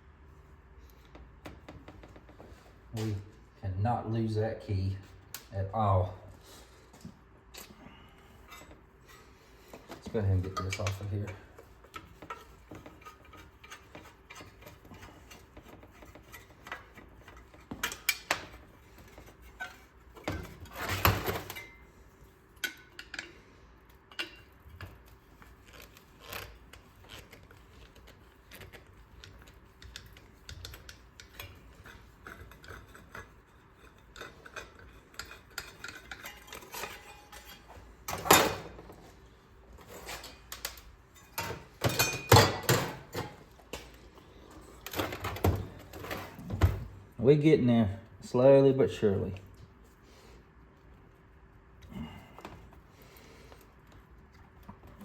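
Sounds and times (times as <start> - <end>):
metal engine parts clattering: 33.9 - 38.9, 39.8 - 43.9.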